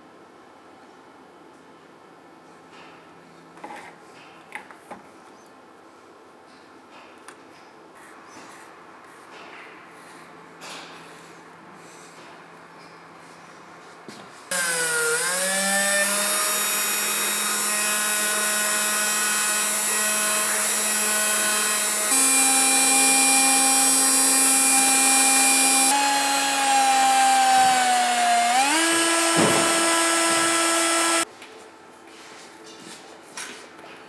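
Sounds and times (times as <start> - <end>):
power tool motor whining: 14.5 - 31.2.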